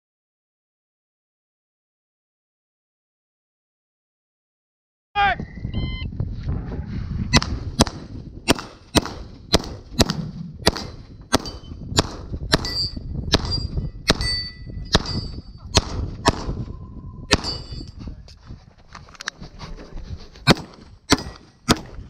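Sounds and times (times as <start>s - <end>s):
gunshots: 7.4s - 16.6s, 17.3s - 17.8s, 20.4s - 22.0s.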